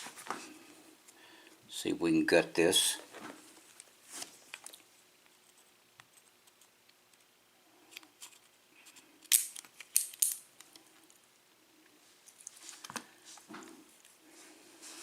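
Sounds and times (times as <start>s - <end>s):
small metal parts clicking: 7.9s - 10.7s.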